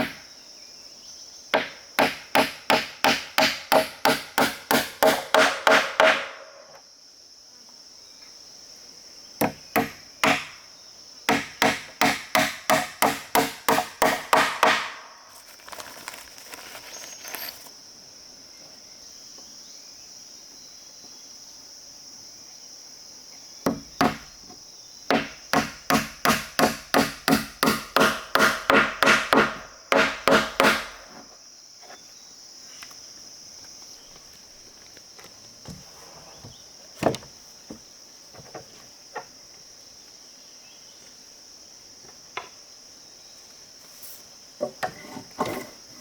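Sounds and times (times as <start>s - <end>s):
chopping wood: 0.0s - 0.2s, 1.5s - 6.6s, 9.4s - 10.6s, 11.3s - 15.1s, 23.7s - 24.4s, 25.1s - 31.0s.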